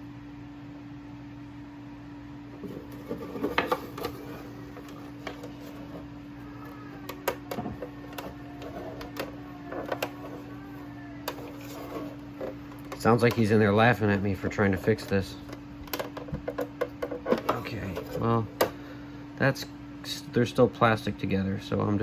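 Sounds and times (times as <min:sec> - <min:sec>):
steady low hum: 0:00.0 - 0:22.0
baby babbling: 0:06.4 - 0:08.6.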